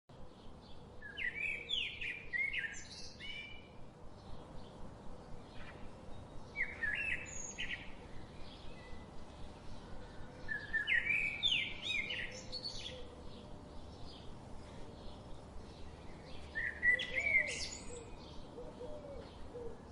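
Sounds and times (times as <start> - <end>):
faint birds calling: 0.1 - 19.9
songbird chirping: 0.1 - 19.9.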